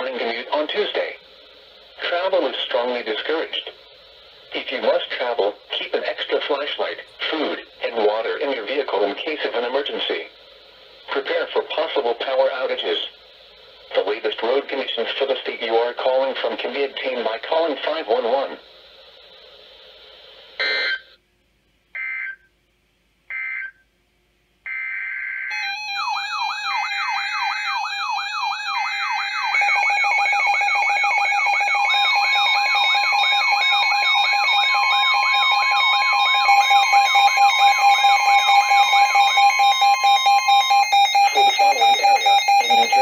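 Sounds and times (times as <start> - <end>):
rapid pulsed beeping: 24.7 - 43.0
warbling siren tone: 24.7 - 43.0
beeping: 31.8 - 43.0
digital data bursts: 31.8 - 43.0
steady alert tone: 37.4 - 43.0.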